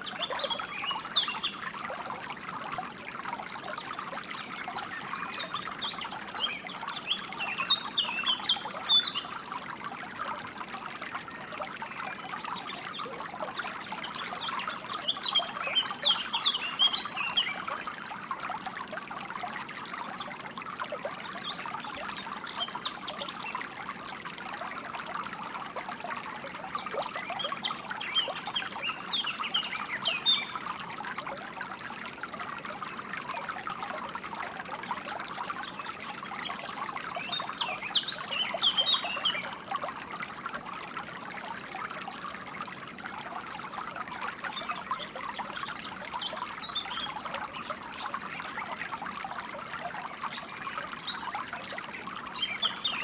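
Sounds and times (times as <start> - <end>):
stream trickling over stones: 0.0 - 53.0
songbirds chirping: 3.7 - 9.3, 12.0 - 17.8, 35.2 - 39.6, 44.5 - 49.0, 50.1 - 53.0.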